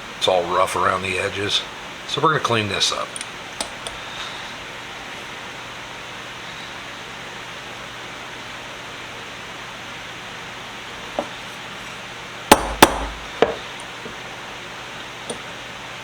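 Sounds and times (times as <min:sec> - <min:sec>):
shop noise hiss: 0:00.0 - 0:16.0
hammer striking steel: 0:12.5 - 0:13.6.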